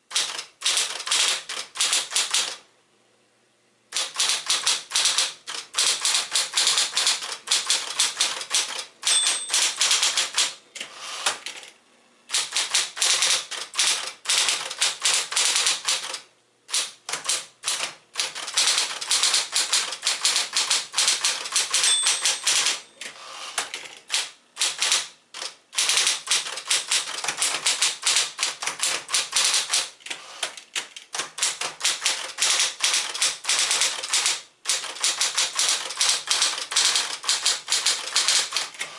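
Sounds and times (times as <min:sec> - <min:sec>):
typewriter typebar clacks: 0:00.1 - 0:02.6, 0:03.9 - 0:11.7, 0:12.3 - 0:38.9
typewriter margin bell ring: 0:04.0 - 0:10.6, 0:18.2 - 0:23.0, 0:32.5 - 0:38.6.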